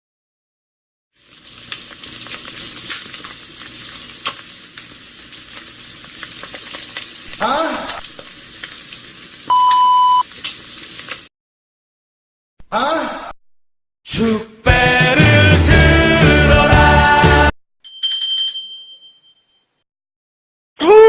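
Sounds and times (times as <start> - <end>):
crackling sizzling noise with clicks: 1.2 - 11.3.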